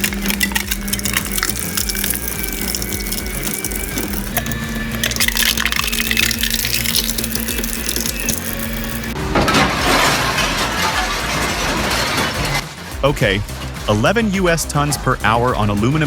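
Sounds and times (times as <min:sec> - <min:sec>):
material crackling and clattering: 0:00.0 - 0:12.8
shredder humming: 0:00.0 - 0:13.8.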